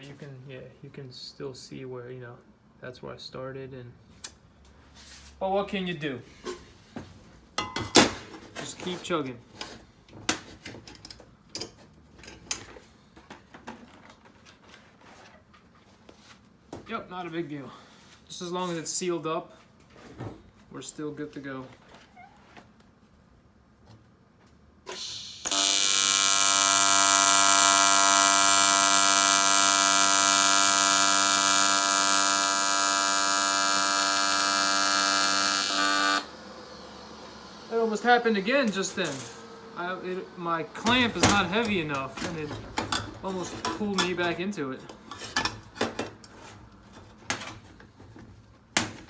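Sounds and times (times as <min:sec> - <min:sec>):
welding arc buzzing: 0:24.9 - 0:42.5.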